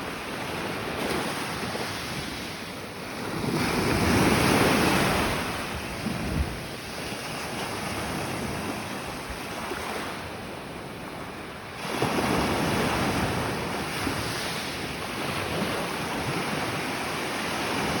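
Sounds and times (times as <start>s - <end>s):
wind buffeting microphone: 0.0s - 9.6s.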